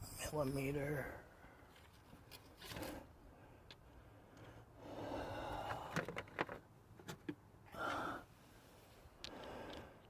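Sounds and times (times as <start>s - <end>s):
faint breathing: 2.7s - 6.2s, 7.7s - 10.0s.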